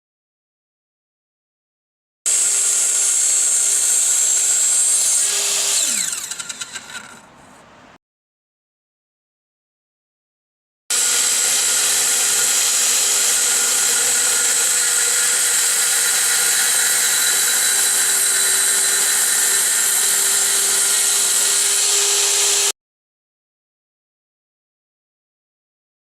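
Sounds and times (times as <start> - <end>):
miter saw cutting wood: 2.3 - 7.5, 10.9 - 22.8.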